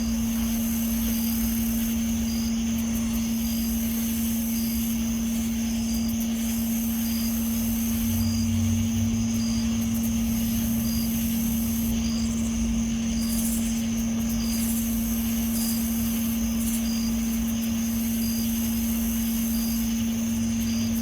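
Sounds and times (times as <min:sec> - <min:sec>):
steady droning hum: 0:00.0 - 0:21.0.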